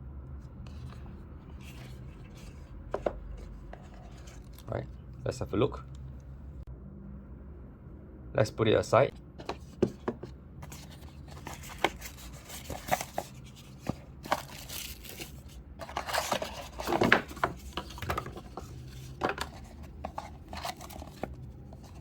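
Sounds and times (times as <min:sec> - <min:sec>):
packaging rustling and crinkling: 0:10.6 - 0:22.0.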